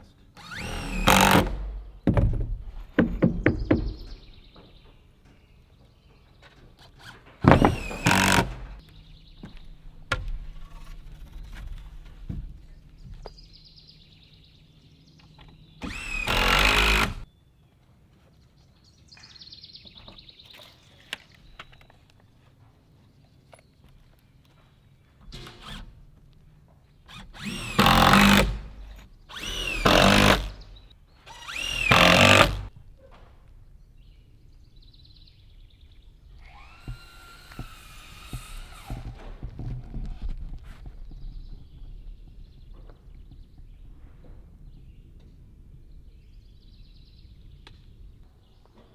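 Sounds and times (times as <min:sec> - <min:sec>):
power saw cutting wood: 0:00.4 - 0:01.8, 0:06.8 - 0:08.8, 0:15.8 - 0:17.2, 0:25.4 - 0:26.0, 0:27.1 - 0:32.7, 0:36.4 - 0:39.5
sharp knocks on wood: 0:02.0 - 0:04.3.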